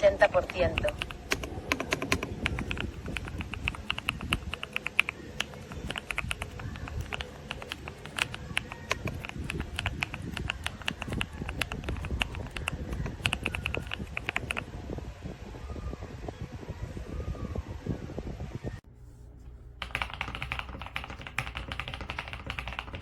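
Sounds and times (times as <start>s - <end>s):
mechanical keyboard key clacks: 0.3s - 14.6s, 19.8s - 23.0s.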